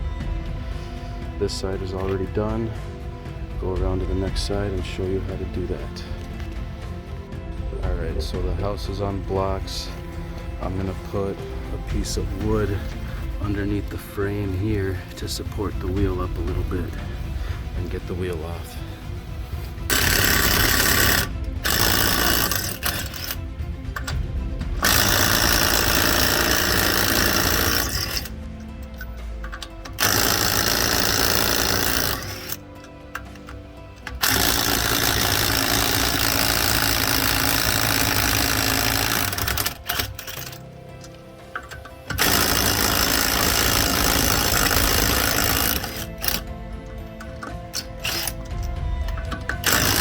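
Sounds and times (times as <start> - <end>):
impact wrench hammering: 19.7 - 50.0.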